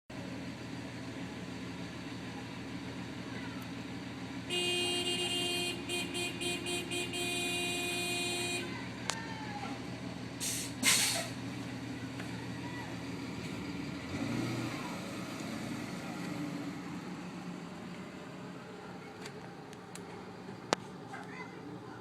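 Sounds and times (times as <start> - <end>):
idling vehicles rumble: 0.1 - 22.0
car horn: 4.4 - 8.9
short sharp hisses: 10.4 - 11.4.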